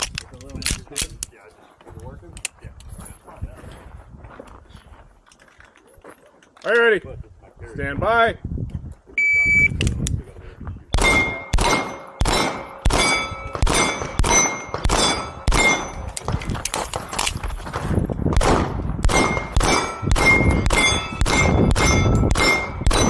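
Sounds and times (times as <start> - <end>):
steel targets clanging: 11.0 - 16.2, 19.1 - 23.0
handgun shots: 11.0 - 16.3, 18.4 - 23.0.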